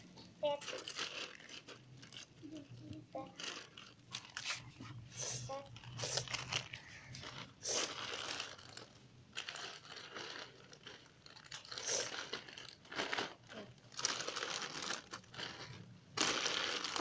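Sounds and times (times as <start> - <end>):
plastic packaging crinkling: 0.2 - 17.0.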